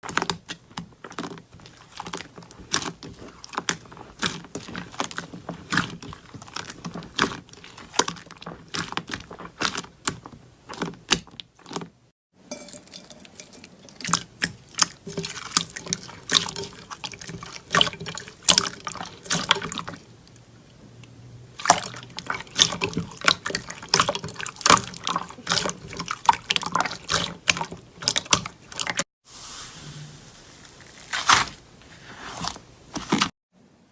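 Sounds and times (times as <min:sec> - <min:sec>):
slime squishing with wet pops: 0:00.0 - 0:11.9, 0:14.0 - 0:29.0.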